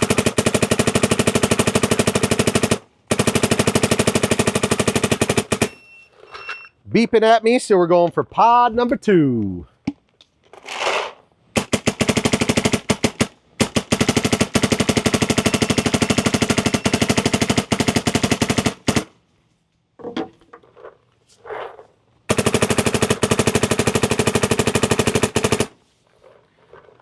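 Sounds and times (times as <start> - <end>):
paintball marker rapid firing: 0.0 - 5.8, 11.6 - 19.1, 22.3 - 25.8.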